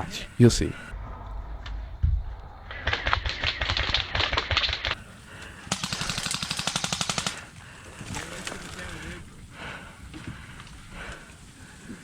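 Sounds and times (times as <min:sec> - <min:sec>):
airsoft guns firing full-auto: 0:02.7 - 0:09.3.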